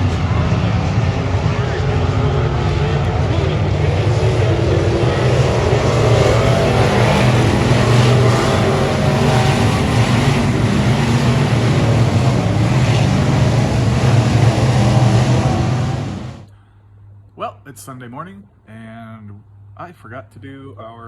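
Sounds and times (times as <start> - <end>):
race car engine at speed: 0.0 - 16.5.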